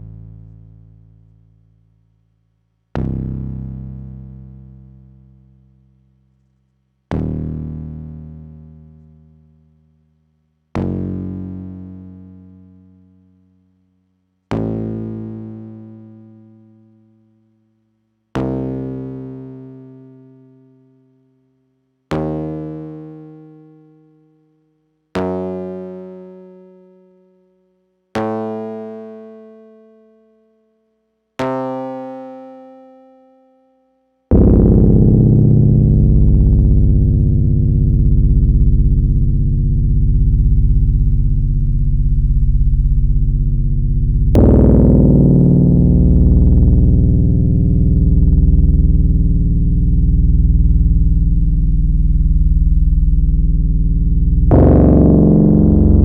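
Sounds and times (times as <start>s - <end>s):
synthesizer bass notes: 34.3s - 56.0s.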